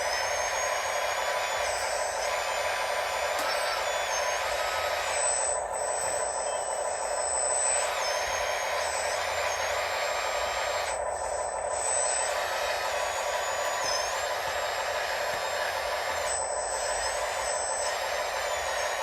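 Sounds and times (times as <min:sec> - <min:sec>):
electric motors whirring: 0:00.0 - 0:19.0.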